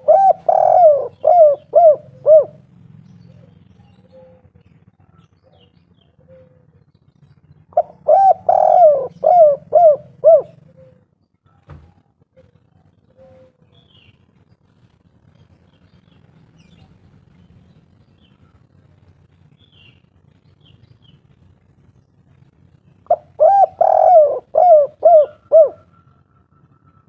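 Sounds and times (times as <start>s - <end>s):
dove cooing: 0.0s - 6.9s, 7.7s - 14.0s, 23.0s - 27.0s.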